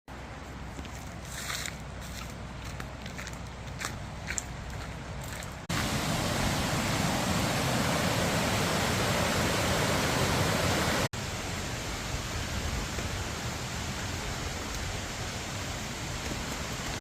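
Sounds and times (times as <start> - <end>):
waterfall rushing: 5.7 - 17.0.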